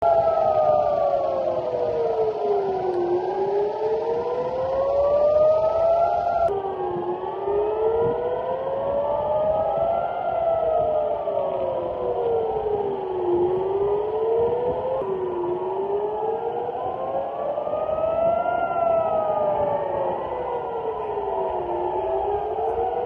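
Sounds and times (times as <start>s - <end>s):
air raid sirens wailing: 0.0s - 23.0s.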